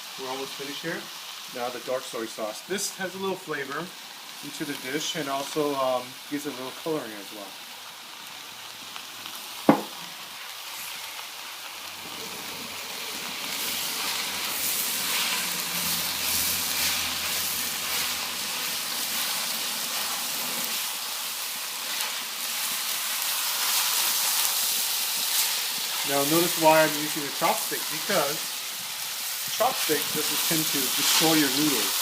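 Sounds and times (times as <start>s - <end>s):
noodles sizzling in a wok: 0.0s - 32.0s
sharp knock: 9.7s - 10.0s.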